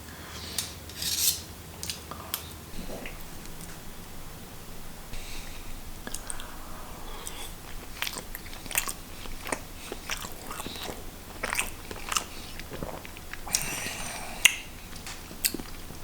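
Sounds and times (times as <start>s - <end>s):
close-up chewing: 2.7s - 16.0s
wet mouth clicks and smacks: 6.0s - 13.8s, 14.4s - 16.0s.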